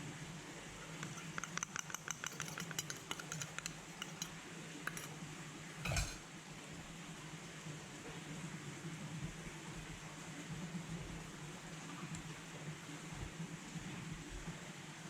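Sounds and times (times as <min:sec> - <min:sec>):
light clicks and clinks: 0:01.0 - 0:04.3, 0:04.9 - 0:05.2, 0:05.9 - 0:06.2.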